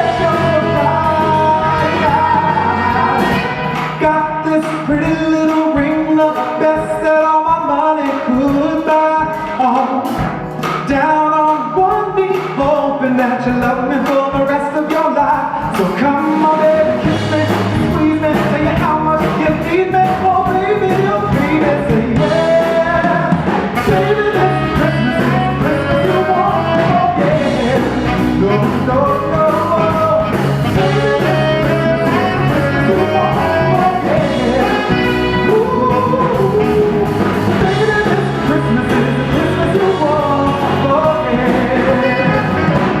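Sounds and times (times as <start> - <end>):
band with brass playing pop: 0.0 - 43.0
person singing: 0.0 - 43.0.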